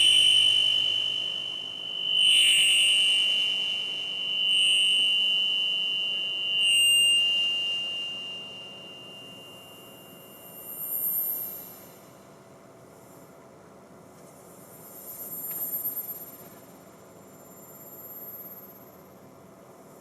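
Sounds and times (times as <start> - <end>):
high electronic tone: 0.0 - 10.1.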